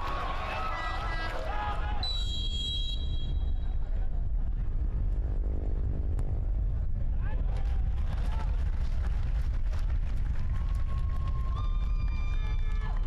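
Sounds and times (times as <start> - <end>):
sharp whistle blast: 2.0 - 3.5
low rumble: 3.0 - 13.0.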